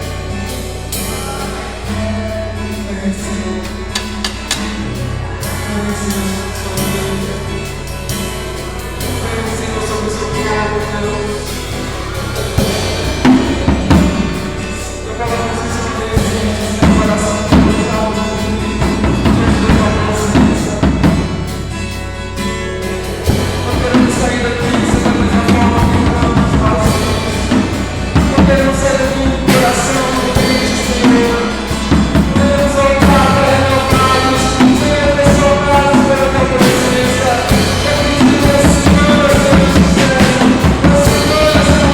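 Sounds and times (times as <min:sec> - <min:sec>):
acoustic guitar: 0:00.0 - 0:41.9
drum kit with cymbals: 0:00.0 - 0:41.9
person singing: 0:00.9 - 0:21.5, 0:23.1 - 0:41.9.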